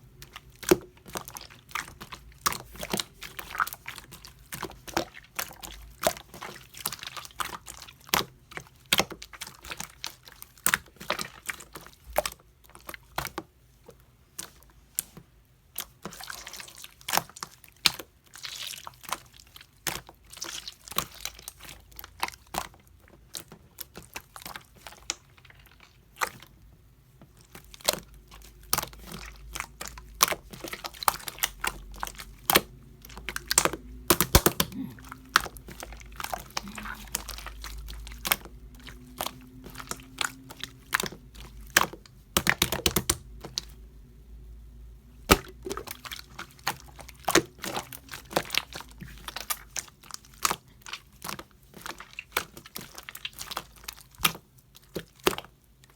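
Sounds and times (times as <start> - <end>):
slime clicking and popping: 27.5 - 43.8, 45.2 - 55.5.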